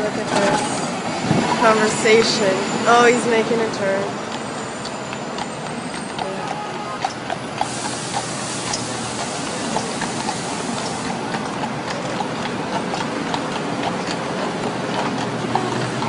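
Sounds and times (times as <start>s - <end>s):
city traffic noise: 0.0s - 16.0s
horse hooves clip-clopping: 0.0s - 16.0s
loud hiss: 7.6s - 11.1s.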